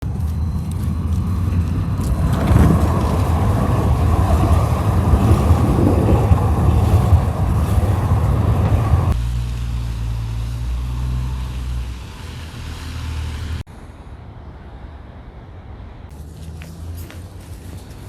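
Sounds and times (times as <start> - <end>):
wind buffeting microphone: 0.0 - 9.2
city street traffic rumble: 0.0 - 18.0.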